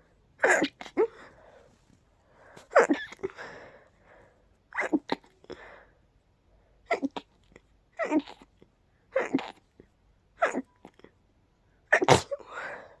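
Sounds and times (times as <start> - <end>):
person breathing: 3.3 - 4.5
person sneezing: 11.9 - 12.8.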